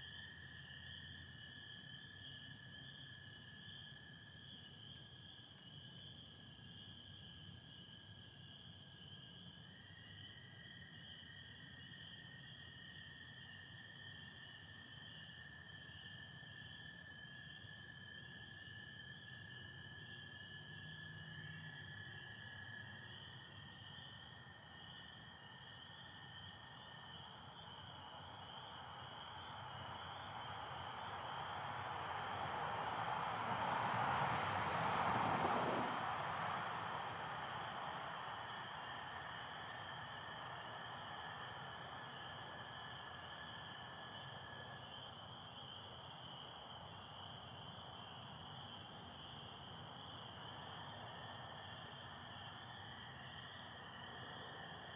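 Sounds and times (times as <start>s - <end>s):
frogs trilling chorus: 0.0s - 54.9s
vehicle rushing: 30.3s - 41.5s.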